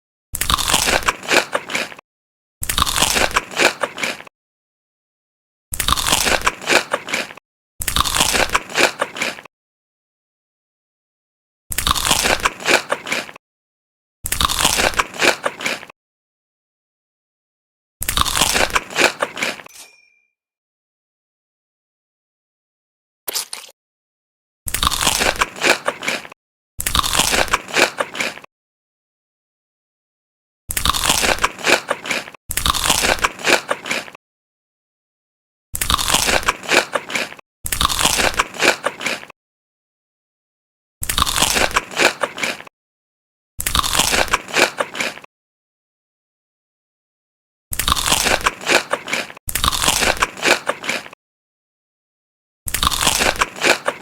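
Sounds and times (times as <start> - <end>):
crunching bites into crispy chicken: 0.4 - 2.0, 2.6 - 4.3, 5.7 - 9.5, 11.7 - 13.4, 14.2 - 16.0, 18.0 - 19.7, 23.3 - 23.8, 24.7 - 28.5, 30.7 - 34.2, 35.8 - 39.4, 41.0 - 42.7, 43.6 - 45.3, 47.7 - 51.2, 52.7 - 54.0.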